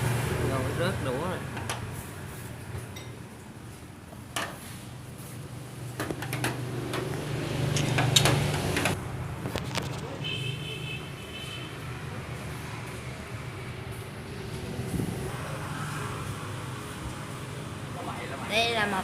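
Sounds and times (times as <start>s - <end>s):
street traffic: 0.0s - 19.0s
vehicle passing: 5.2s - 10.2s, 11.7s - 19.0s.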